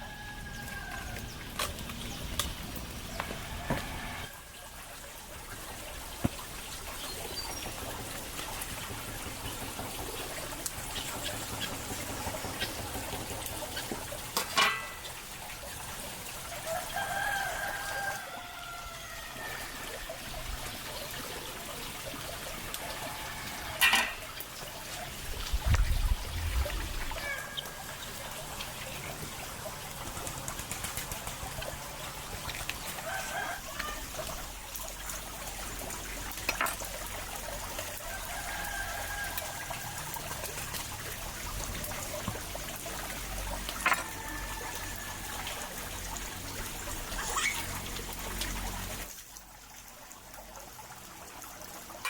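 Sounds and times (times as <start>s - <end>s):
chickens calling: 26.7s - 32.0s.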